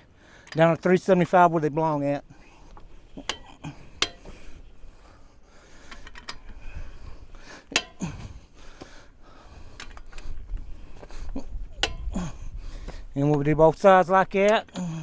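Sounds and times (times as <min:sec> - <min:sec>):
metallic clinks of lug nuts: 0:03.2 - 0:04.5, 0:05.8 - 0:06.6, 0:07.6 - 0:08.2, 0:11.8 - 0:12.2.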